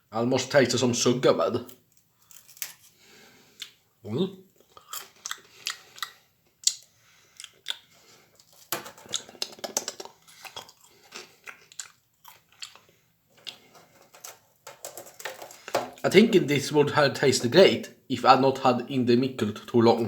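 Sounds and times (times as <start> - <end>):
chewing burnt marshmallow: 4.6 - 7.9, 9.1 - 13.8.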